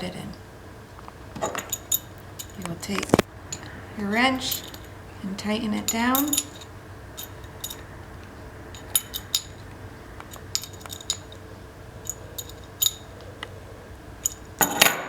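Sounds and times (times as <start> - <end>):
wrench clinking on metal valve: 1.4 - 2.9, 3.5 - 7.9, 8.7 - 13.6, 14.2 - 15.0.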